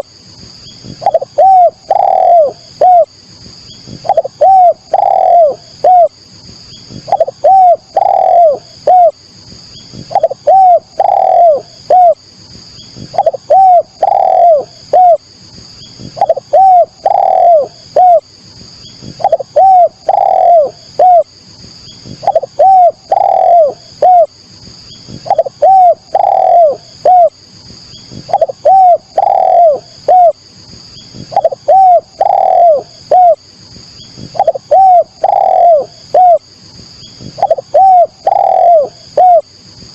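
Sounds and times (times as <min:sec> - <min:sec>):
dove cooing: 0:00.9 - 0:03.1, 0:03.9 - 0:06.2, 0:06.9 - 0:09.2, 0:09.9 - 0:12.2, 0:13.0 - 0:15.2, 0:16.0 - 0:18.3, 0:19.0 - 0:21.3, 0:22.0 - 0:24.4, 0:25.1 - 0:27.4, 0:28.1 - 0:30.4, 0:31.2 - 0:33.4, 0:34.2 - 0:36.5, 0:37.2 - 0:39.5.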